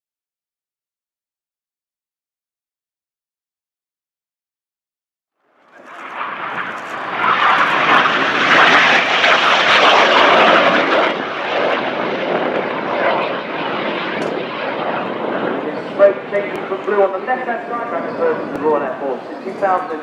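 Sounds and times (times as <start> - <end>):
jet engines roaring past: 5.5 - 20.0.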